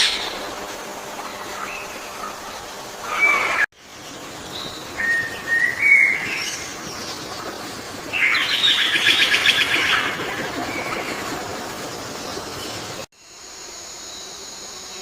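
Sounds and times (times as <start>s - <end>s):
bird whistled rising call: 5.0s - 6.6s.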